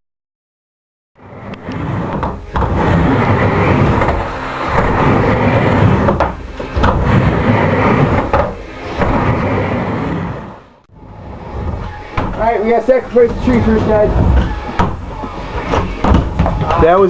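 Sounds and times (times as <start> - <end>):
wheels rolling on wooden ramp: 1.2 - 17.0
sharp knocks and bangs on ramp: 13.1 - 16.8.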